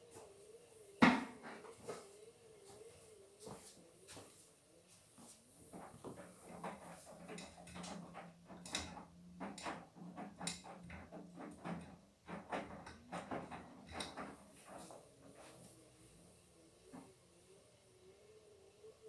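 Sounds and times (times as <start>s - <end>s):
washing machine motor hum: 5.2s - 19.0s
laundry knocking and swishing in drum: 5.7s - 15.7s.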